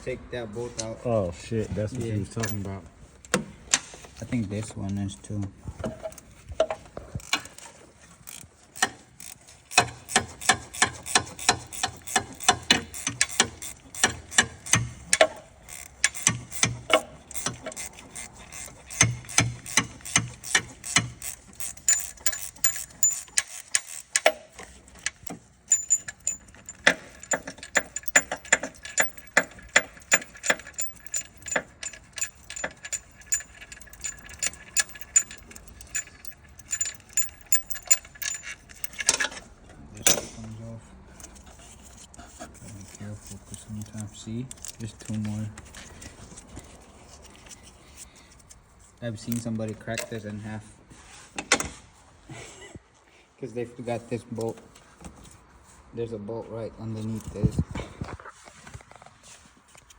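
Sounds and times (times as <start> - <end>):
ratchet wrench clicking: 5.8 - 40.2.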